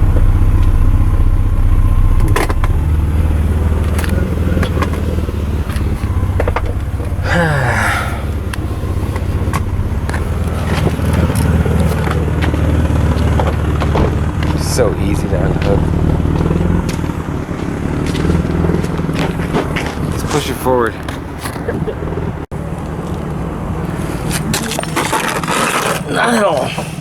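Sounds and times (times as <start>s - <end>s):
noise burst with gliding pitch: 0.0s - 7.3s
car engine rumbling: 0.0s - 27.0s.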